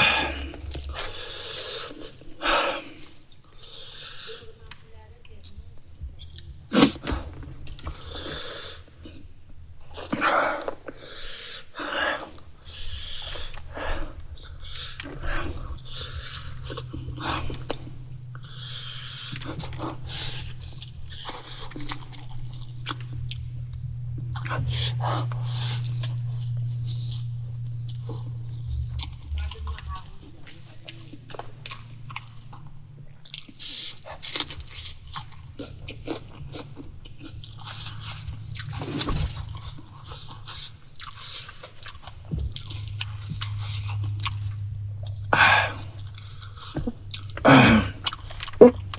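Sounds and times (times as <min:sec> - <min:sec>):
person chewing food: 0:00.0 - 0:04.4, 0:05.5 - 0:48.9
low hum: 0:12.9 - 0:33.2, 0:34.4 - 0:48.9.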